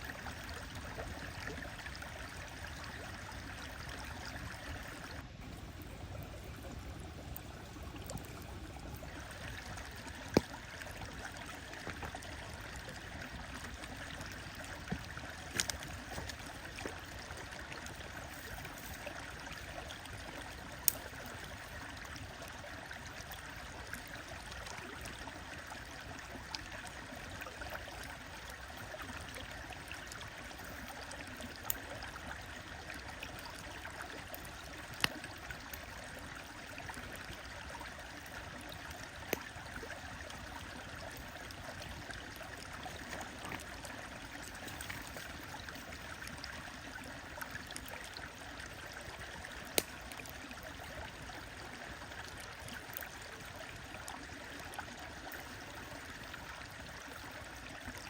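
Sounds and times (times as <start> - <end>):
stream flowing: 0.0 - 58.0
wood fire crackling and popping: 5.5 - 17.1, 20.6 - 21.8, 41.1 - 46.3, 49.6 - 50.4.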